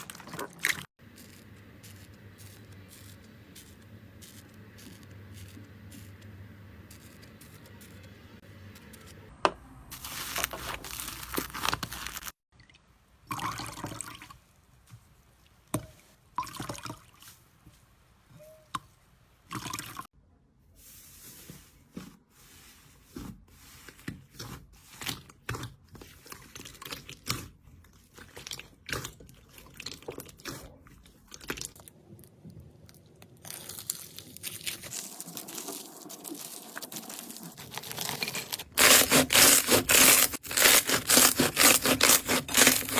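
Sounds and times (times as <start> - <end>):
slime squishing and crackling: 10.0 - 12.4, 24.9 - 42.9.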